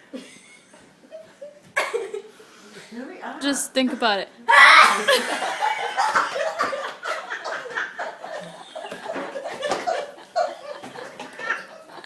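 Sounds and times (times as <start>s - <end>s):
people giggling and laughing: 0.1s - 2.4s, 4.9s - 12.0s.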